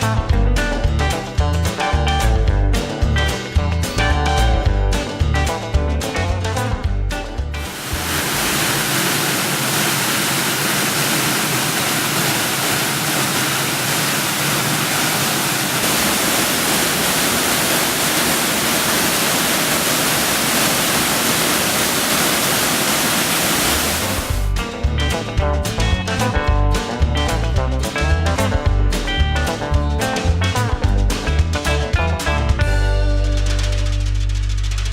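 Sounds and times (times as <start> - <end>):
background music: 0.0 - 8.2, 24.2 - 34.9
waterfall rushing: 7.6 - 24.5.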